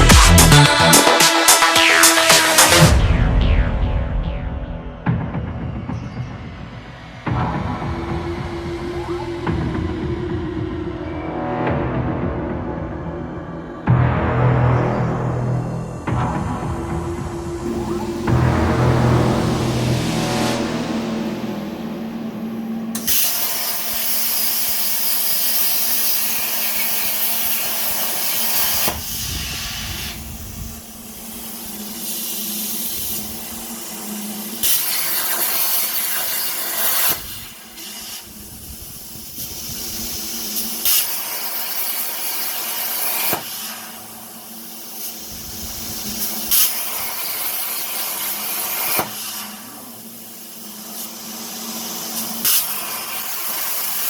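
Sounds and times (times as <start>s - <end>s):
held synth chord: 6.4s - 24.2s
white-noise hiss: 17.6s - 54.0s.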